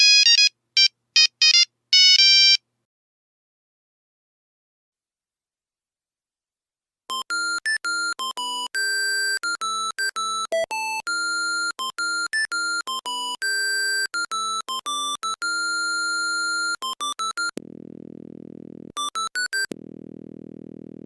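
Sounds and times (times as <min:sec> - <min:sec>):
monophonic ringtone beeping melody: 0:07.1 - 0:17.6
low pulsing buzz: 0:17.6 - 0:19.0, 0:19.7 - 0:21.0.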